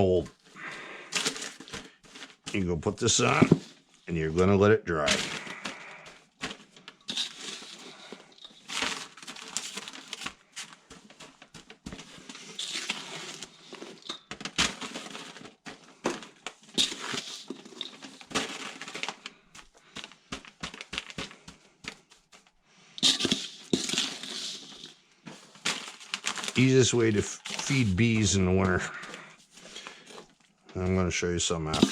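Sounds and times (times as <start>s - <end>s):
crunching and crinkling of newspaper: 0.0s - 31.9s.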